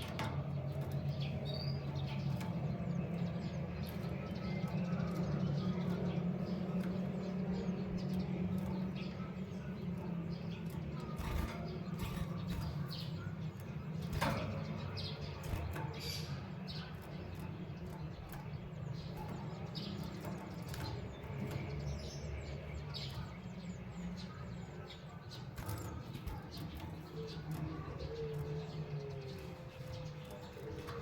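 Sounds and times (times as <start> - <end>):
wings fluttering knocks: 0.0 - 24.3
small birds chirping: 0.0 - 31.0
steady low hum: 0.0 - 31.0.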